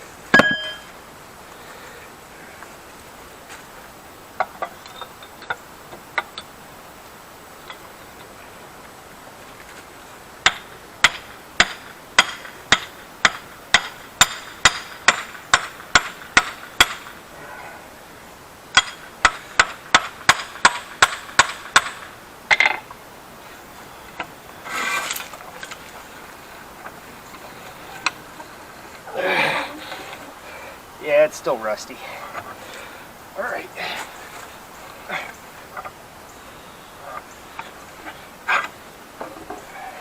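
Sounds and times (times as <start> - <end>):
metal clank: 0.3 - 0.9
ringing metal-on-metal strikes: 0.4 - 0.9
metal scrape: 24.6 - 25.7.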